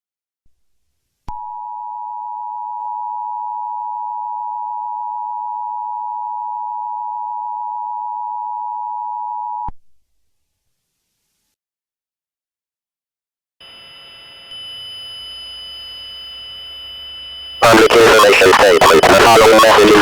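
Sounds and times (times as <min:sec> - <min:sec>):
dual-tone alert signal: 0:17.6 - 0:20.0.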